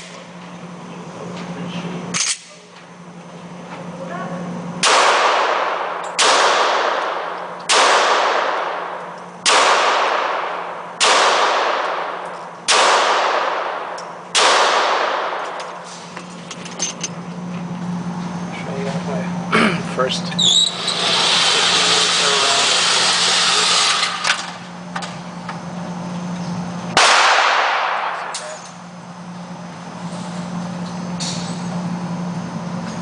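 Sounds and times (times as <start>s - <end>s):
handgun shots echoing: 4.8s - 15.7s, 27.0s - 28.7s.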